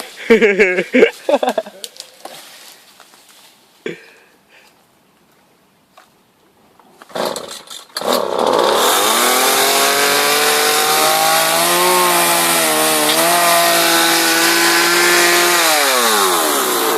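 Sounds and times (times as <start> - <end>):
chainsaw engine revving: 7.1 - 16.9
chainsaw starting rattles: 7.1 - 16.9.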